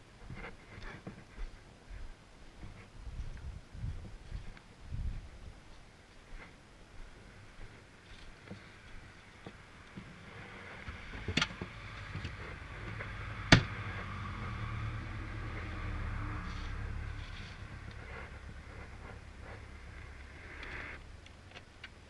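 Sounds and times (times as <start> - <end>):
atv engine rumbling: 7.1 - 22.0.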